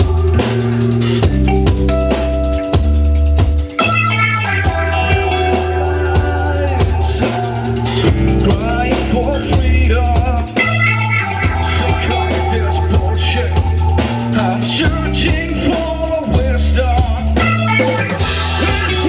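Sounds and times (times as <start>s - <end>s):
deep sustained bass notes: 0.0s - 19.0s
drum kit: 0.0s - 19.0s
guitar: 0.0s - 19.0s.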